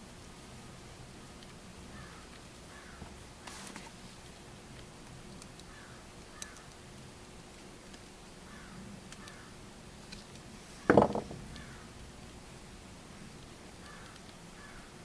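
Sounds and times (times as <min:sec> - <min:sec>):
crows cawing: 0:02.0 - 0:03.0, 0:05.7 - 0:06.6, 0:08.5 - 0:09.5, 0:13.8 - 0:14.9
sharp knock: 0:10.9 - 0:11.4.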